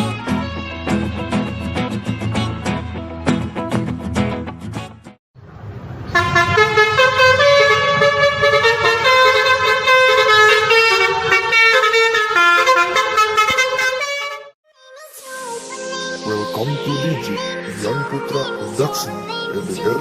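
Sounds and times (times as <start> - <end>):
musical air horn melody: 6.1 - 14.6.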